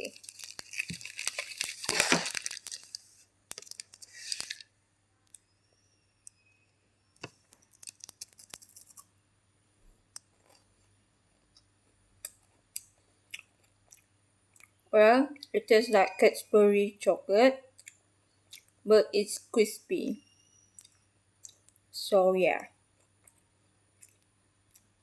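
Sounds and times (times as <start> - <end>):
plastic wrapper crinkling: 0.0 - 4.7, 7.5 - 9.0
small crackles and clicks: 0.0 - 5.5, 7.2 - 9.2, 9.9 - 16.2, 23.0 - 25.0.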